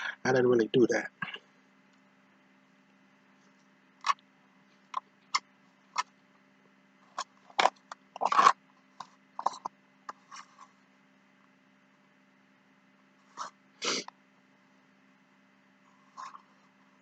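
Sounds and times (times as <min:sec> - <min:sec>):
person chewing crunchy food: 0:07.5 - 0:08.6.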